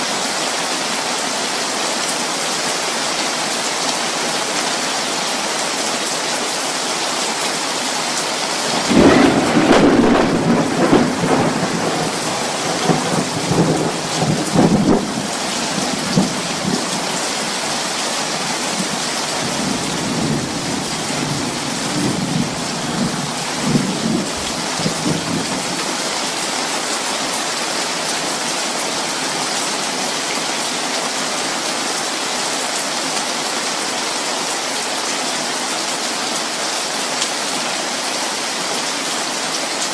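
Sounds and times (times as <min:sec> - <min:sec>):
heavy rain: 0:00.0 - 0:39.9
thunder rolling: 0:08.6 - 0:17.0.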